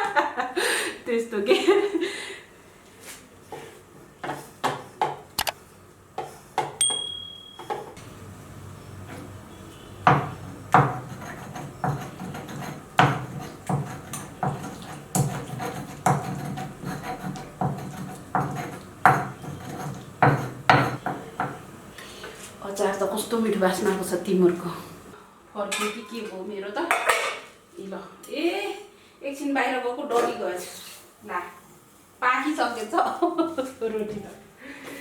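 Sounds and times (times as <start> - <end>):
cookware knocking and thumping: 6.6 - 8.0, 18.4 - 21.6.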